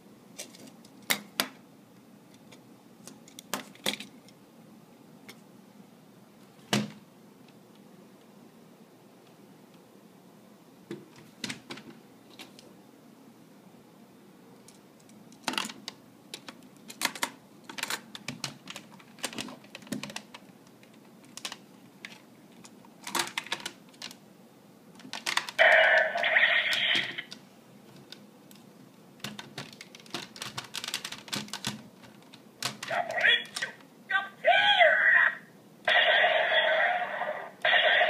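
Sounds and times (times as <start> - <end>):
toy electronic sound effect: 25.6 - 27.3, 35.9 - 38.0
plastic toy clicks and clacks: 29.2 - 33.7.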